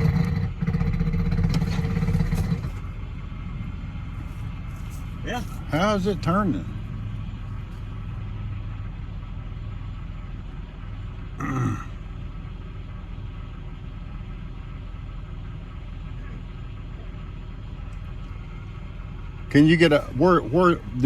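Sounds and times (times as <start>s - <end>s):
car engine droning: 0.0s - 21.0s
person grunting: 11.4s - 12.0s.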